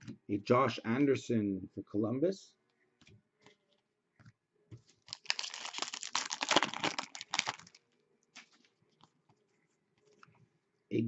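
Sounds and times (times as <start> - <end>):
packaging crinkling and rustling: 5.0 - 7.8.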